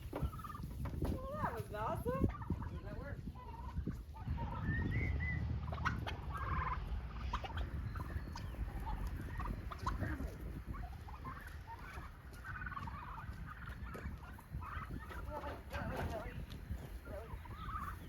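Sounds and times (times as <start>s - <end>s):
turkeys chirping and yelping: 0.0s - 18.0s
low rumbling noise: 3.4s - 11.7s.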